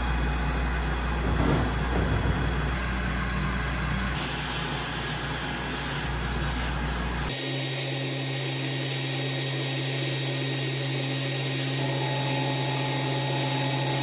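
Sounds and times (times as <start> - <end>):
low machine hum: 0.0 - 7.3, 11.9 - 14.0
sandblasting hiss: 4.2 - 14.0.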